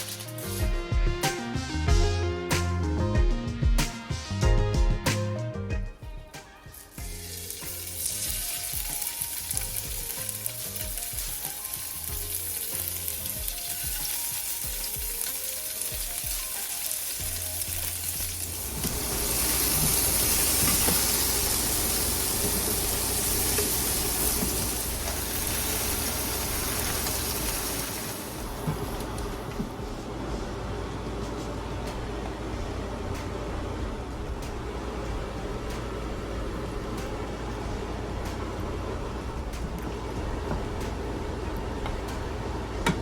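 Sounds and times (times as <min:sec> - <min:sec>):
food sizzling in a hot pan: 0:00.0 - 0:00.7, 0:06.6 - 0:29.1.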